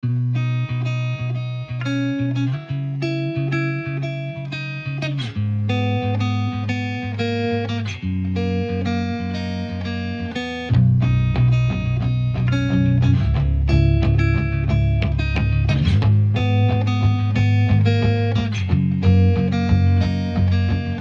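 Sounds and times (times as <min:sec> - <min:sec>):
plucked guitar music: 0:00.0 - 0:21.0.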